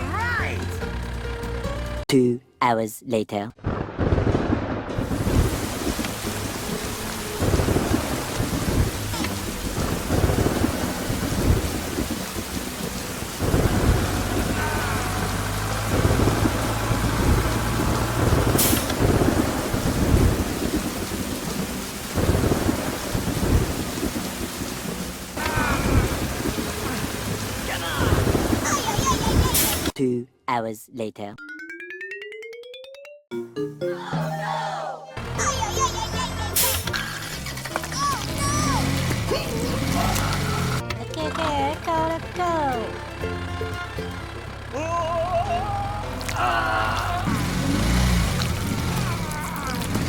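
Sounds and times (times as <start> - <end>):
thunder rumbling: 3.6 - 29.8
heavy rain: 5.0 - 30.0, 35.2 - 40.8, 43.1 - 50.0.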